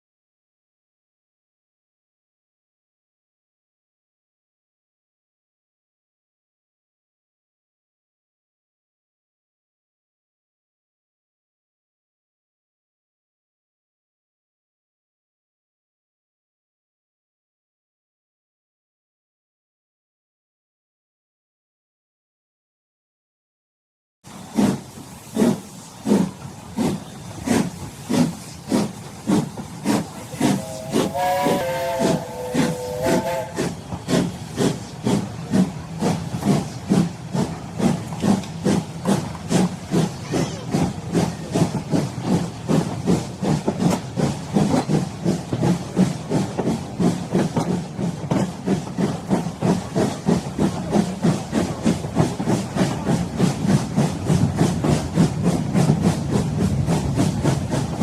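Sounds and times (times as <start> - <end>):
steam locomotive chuffing: 24.3 - 58.0.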